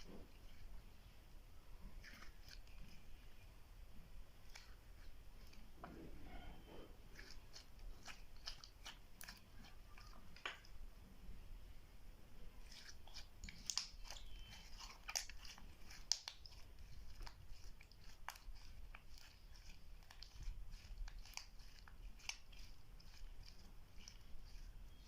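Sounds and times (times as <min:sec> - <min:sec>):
slime squished by hand: 0:12.6 - 0:25.0.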